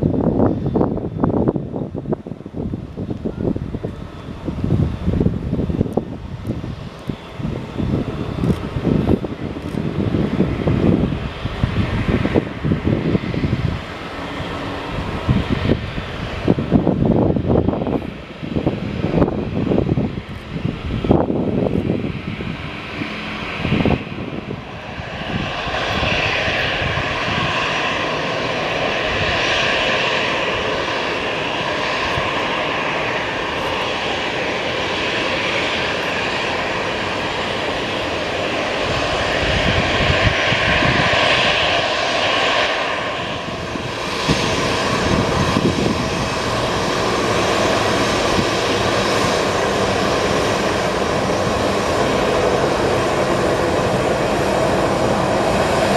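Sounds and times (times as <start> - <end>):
jet engines whining: 0.0 - 55.9.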